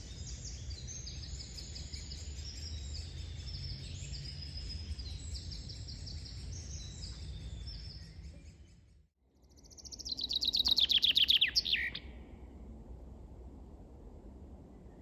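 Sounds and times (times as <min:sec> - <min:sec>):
songbirds singing: 0:00.0 - 0:12.5
fast bird song with downward flourish: 0:00.0 - 0:12.6
low background rumble: 0:11.8 - 0:15.0.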